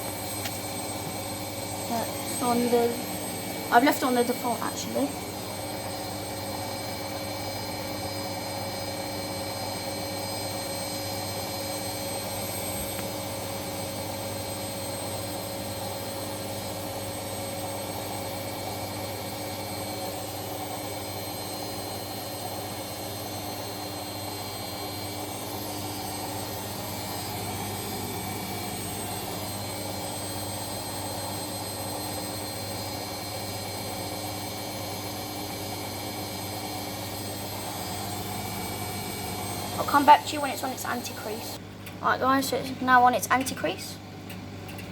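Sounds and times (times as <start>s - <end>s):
washing machine spinning: 0.0s - 44.9s.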